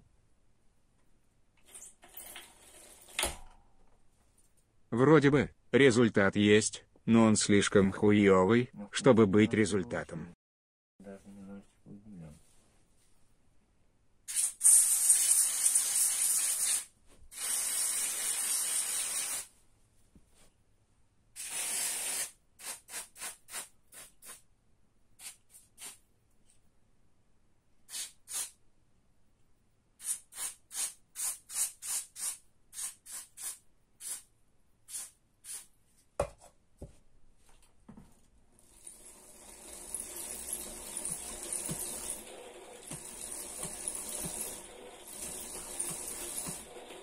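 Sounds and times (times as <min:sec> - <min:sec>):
aerosol spray hissing: 0:21.4 - 0:24.4, 0:27.9 - 0:28.6.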